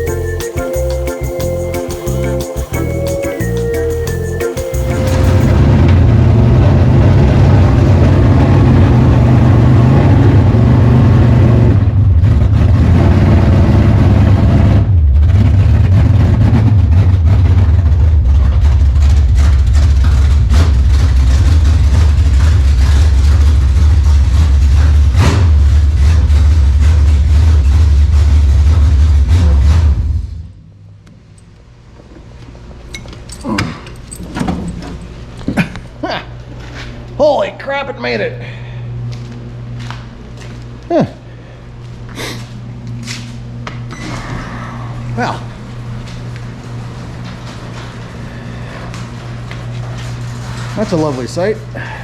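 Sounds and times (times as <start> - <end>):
loud car engine: 4.3 - 30.6.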